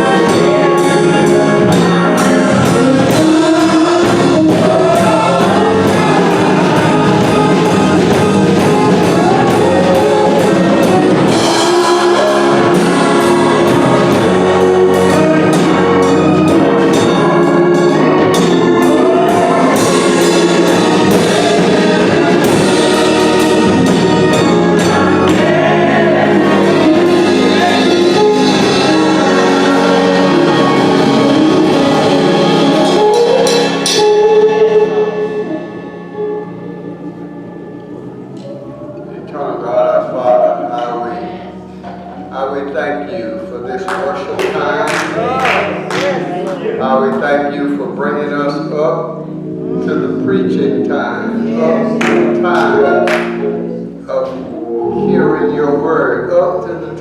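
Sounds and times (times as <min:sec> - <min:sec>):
drums keeping beat: 0:00.0 - 0:36.0, 0:43.8 - 0:47.2, 0:51.6 - 0:55.5
band accompanying: 0:00.0 - 0:57.0
gospel choir singing: 0:00.0 - 0:57.0.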